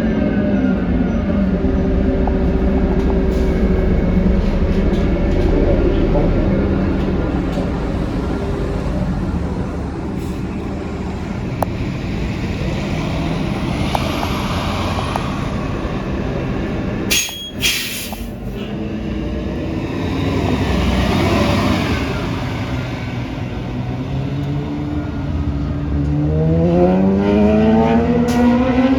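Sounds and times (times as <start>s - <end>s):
bus engine droning: 0.0s - 28.9s
air brake hiss: 17.1s - 18.7s.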